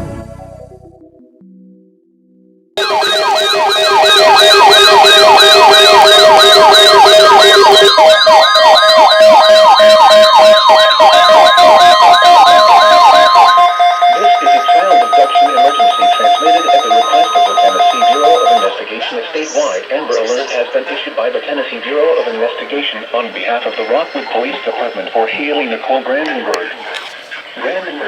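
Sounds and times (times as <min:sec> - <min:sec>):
fast pulsing beeps: 0:02.8 - 0:20.9
weather radio alert alarm: 0:02.8 - 0:25.8.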